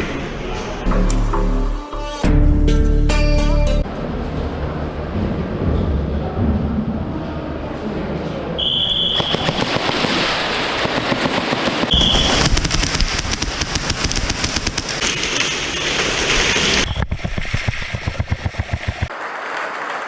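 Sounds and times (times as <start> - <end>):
airsoft guns firing: 9.0 - 15.0.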